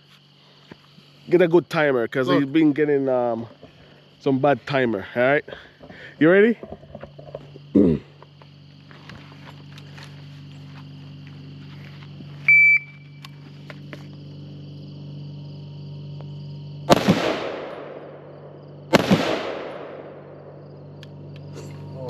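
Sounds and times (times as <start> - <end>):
low hum: 5.6 - 22.0
shot timer beep: 12.5 - 13.0
rifle shots echoing: 16.9 - 20.6.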